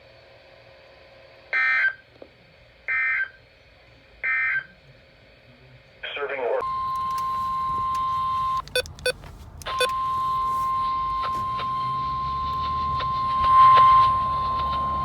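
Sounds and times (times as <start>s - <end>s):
high steady alarm beep: 6.6s - 15.0s
short clicks: 7.9s - 10.0s.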